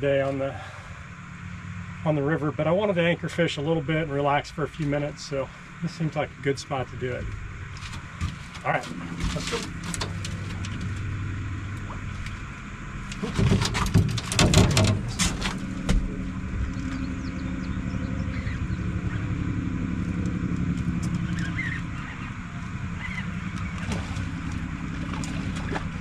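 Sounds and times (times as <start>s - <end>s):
boat engine running: 0.0s - 26.0s
knocks and rattles: 13.1s - 16.2s.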